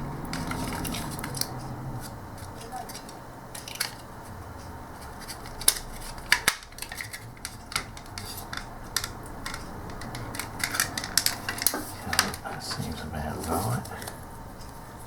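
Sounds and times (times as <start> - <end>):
plastic parts clicking and tapping: 2.4 - 4.1, 5.0 - 12.9.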